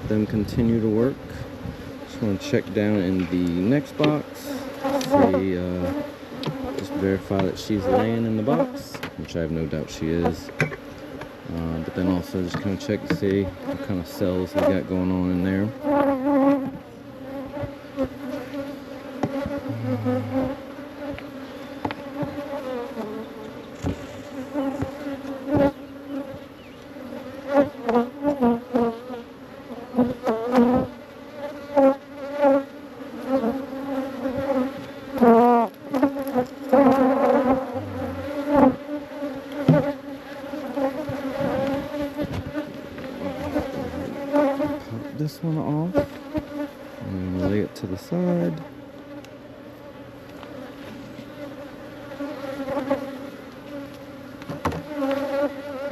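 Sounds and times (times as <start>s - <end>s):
honeybee colony buzzing: 0.0s - 55.9s
single bee flying past: 4.5s - 7.2s, 15.8s - 45.1s, 50.5s - 53.9s, 54.6s - 55.9s
knocks from wooden hive boxes: 6.4s - 8.2s, 10.1s - 11.4s, 12.4s - 13.6s, 19.2s - 22.6s, 23.7s - 26.5s, 39.6s - 40.0s, 40.8s - 44.8s, 54.4s - 55.4s.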